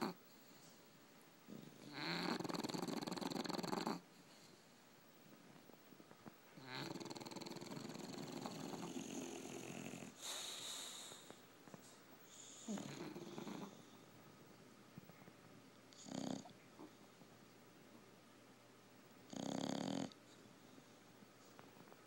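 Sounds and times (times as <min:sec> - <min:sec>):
dog snoring: 0:00.0 - 0:00.2, 0:01.5 - 0:04.4, 0:06.6 - 0:11.4, 0:12.3 - 0:14.0, 0:15.9 - 0:16.9, 0:19.3 - 0:20.2
breathy hiss: 0:06.5 - 0:14.2.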